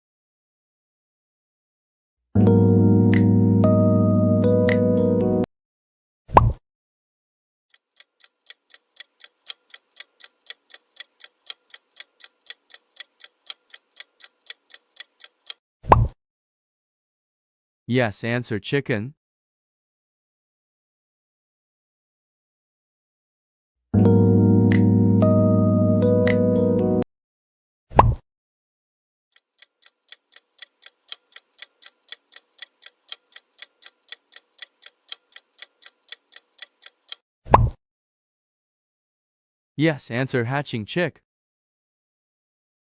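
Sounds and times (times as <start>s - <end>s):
clock ticking: 7.7s - 15.6s, 29.4s - 37.2s.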